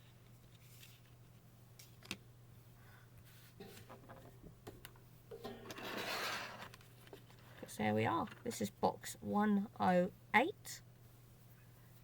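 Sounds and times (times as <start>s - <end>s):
low steady hum: 0.0s - 12.0s
objects rubbing and rustling: 5.3s - 8.6s.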